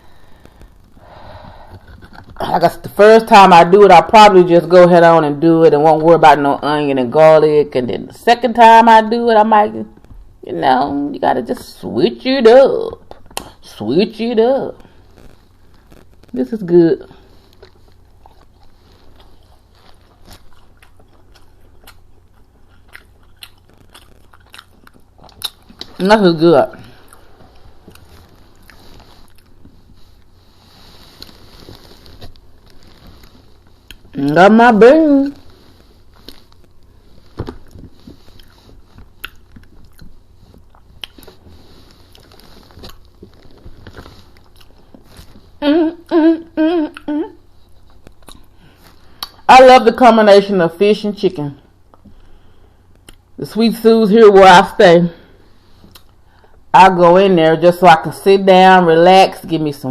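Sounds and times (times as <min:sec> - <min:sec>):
person chewing and smacking food: 0:01.7 - 0:02.4, 0:17.4 - 0:26.0, 0:26.8 - 0:30.4, 0:31.0 - 0:34.2, 0:35.5 - 0:45.5, 0:47.7 - 0:49.4, 0:52.9 - 0:53.3, 0:55.8 - 0:56.2
woman vocal sounds: 0:45.6 - 0:47.5.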